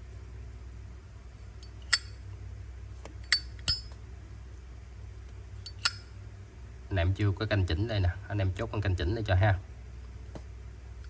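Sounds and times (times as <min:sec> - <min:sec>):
lighter metallic clicks: 0:01.6 - 0:02.2, 0:03.2 - 0:04.0, 0:05.6 - 0:06.1.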